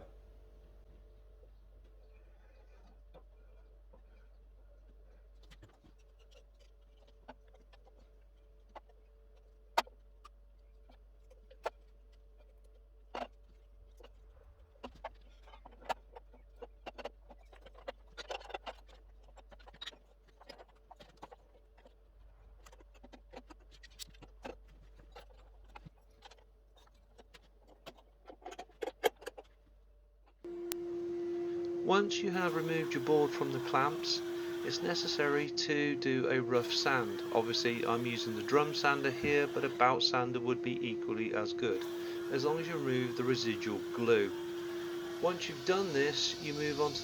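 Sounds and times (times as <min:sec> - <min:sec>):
faint steady hum: 0:30.4 - 0:47.0.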